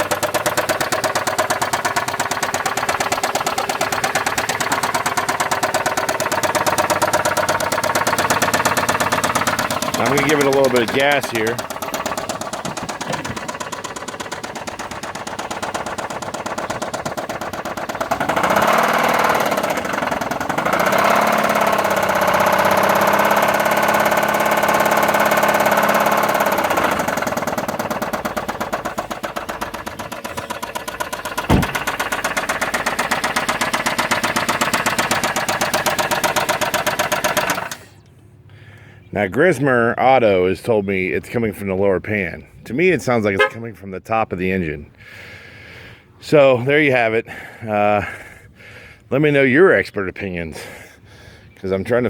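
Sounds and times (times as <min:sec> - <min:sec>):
car engine knocking: 0:00.0 - 0:37.8.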